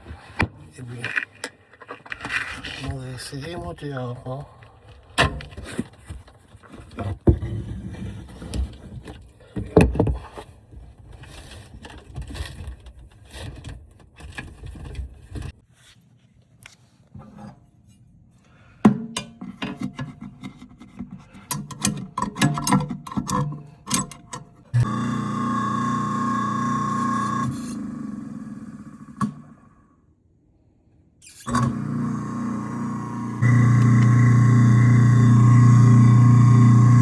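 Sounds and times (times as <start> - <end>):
parts and tools knocking and scraping: 18.8 - 24.8.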